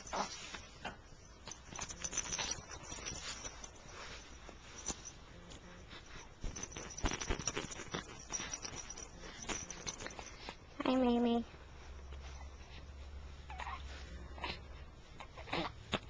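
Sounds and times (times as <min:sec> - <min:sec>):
small pet pattering: 0:00.0 - 0:11.4.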